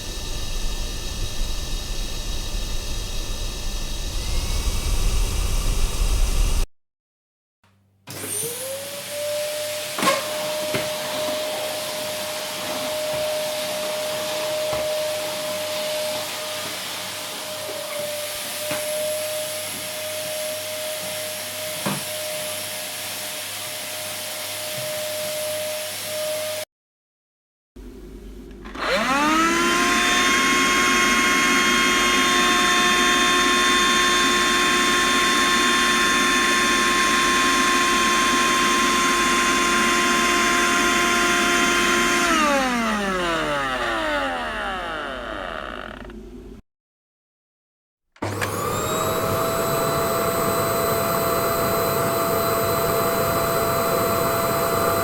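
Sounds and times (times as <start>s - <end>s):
vacuum cleaner spinning up: 0.0s - 6.7s, 8.1s - 26.6s, 28.6s - 46.6s, 48.2s - 55.0s
vacuum cleaner whining: 0.0s - 6.7s, 8.1s - 26.6s, 28.6s - 46.6s, 48.2s - 55.0s
vacuum motor winding down: 0.0s - 6.7s, 28.7s - 46.6s, 48.2s - 55.0s.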